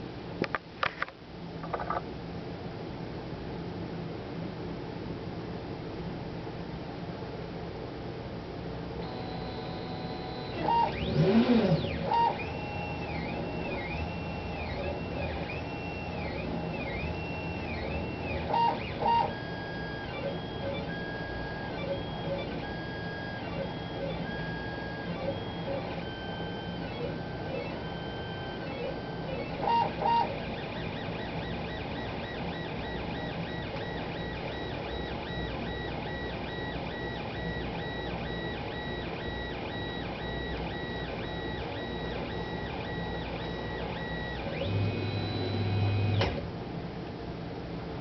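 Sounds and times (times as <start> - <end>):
printer motors whining: 9.0 - 46.5
click: 33.7 - 33.9.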